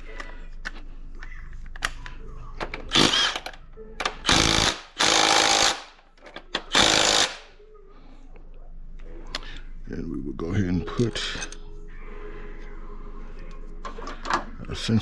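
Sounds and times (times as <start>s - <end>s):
impact wrench running bolts: 2.9s - 3.5s, 4.2s - 6.0s, 6.6s - 7.5s.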